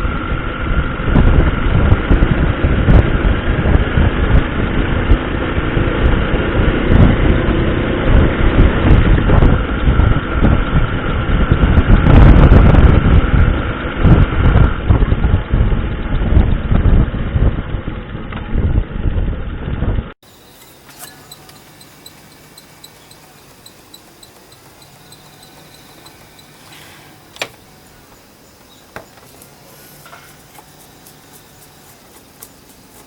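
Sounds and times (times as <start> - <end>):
small motorcycle engine running: 0.0 - 18.2, 20.2 - 33.0
wind buffeting microphone: 0.4 - 20.1
thin high tone: 20.2 - 33.0.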